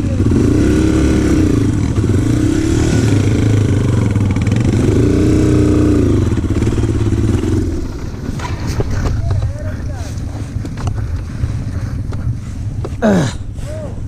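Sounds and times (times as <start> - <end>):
motorcycle engine revving: 0.0 - 11.8.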